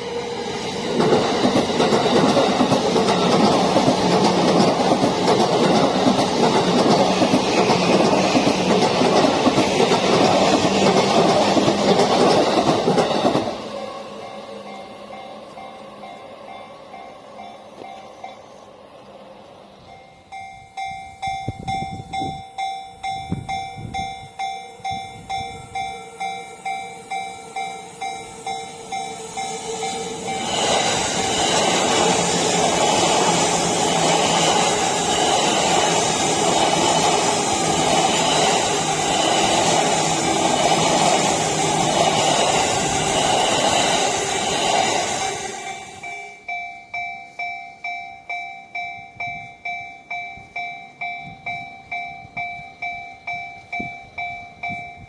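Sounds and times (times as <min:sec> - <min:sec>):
train wheels on rails: 0:00.0 - 0:55.0
level crossing alarm bell: 0:19.8 - 0:30.7, 0:45.8 - 0:55.0.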